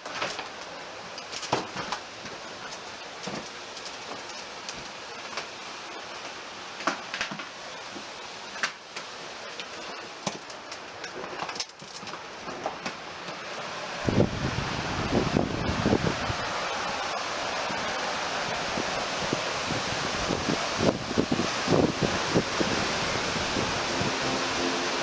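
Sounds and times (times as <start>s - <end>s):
river water rushing: 13.5s - 25.0s
wind buffeting microphone: 13.9s - 25.0s.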